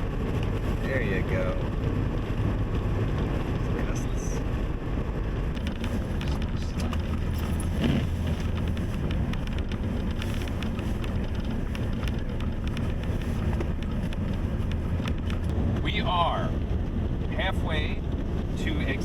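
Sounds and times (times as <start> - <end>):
car driving rumble: 0.0 - 19.0.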